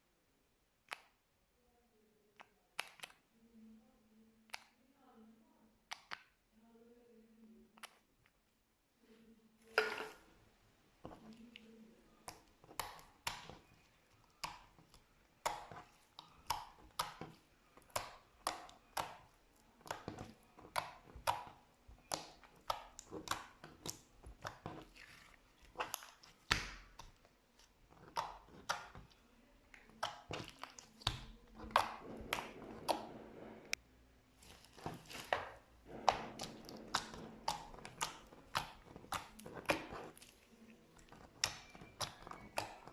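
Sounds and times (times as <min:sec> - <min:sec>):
slime squished by hand: 0:11.1 - 0:42.9.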